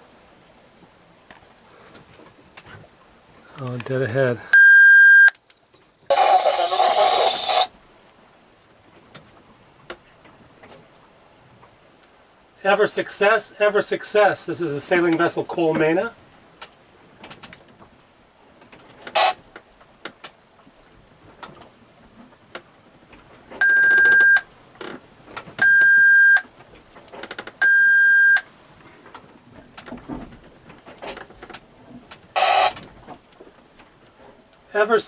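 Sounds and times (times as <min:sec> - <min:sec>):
crackling noise burst: 0:06.1 - 0:07.7
electronic alarm beeping: 0:23.6 - 0:24.4, 0:25.6 - 0:26.4, 0:27.6 - 0:28.4, 0:32.4 - 0:32.8.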